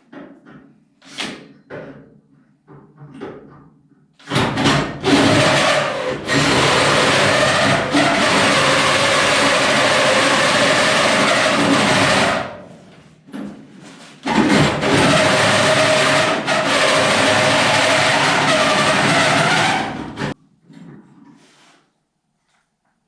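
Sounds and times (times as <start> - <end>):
cordless drill whining: 5.0 - 12.5, 14.5 - 20.3.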